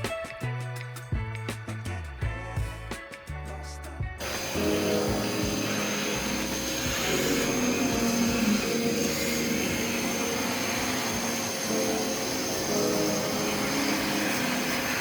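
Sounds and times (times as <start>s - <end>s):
air blower motor whining: 4.2s - 15.0s.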